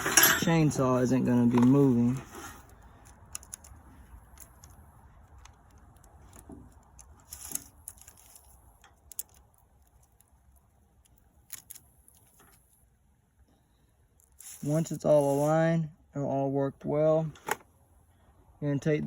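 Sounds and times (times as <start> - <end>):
saw chain clinking: 0.0 - 2.2.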